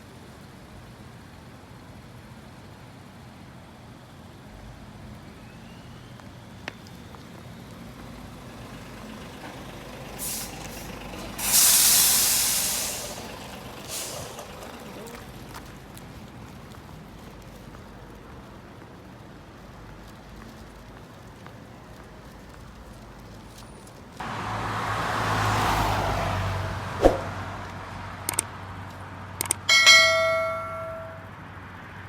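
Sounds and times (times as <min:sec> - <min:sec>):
highway traffic rumble: 0:00.0 - 0:32.0
truck air brakes hissing: 0:09.8 - 0:15.2.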